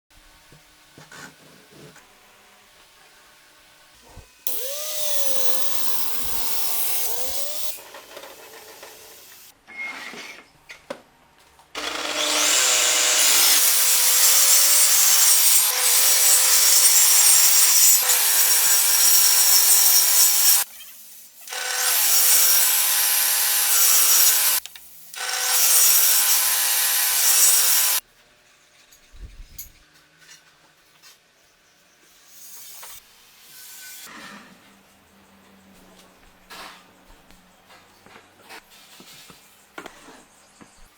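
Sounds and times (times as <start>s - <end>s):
angle grinder cutting wood: 4.5s - 9.4s, 11.8s - 20.7s, 21.5s - 24.6s, 25.2s - 28.0s.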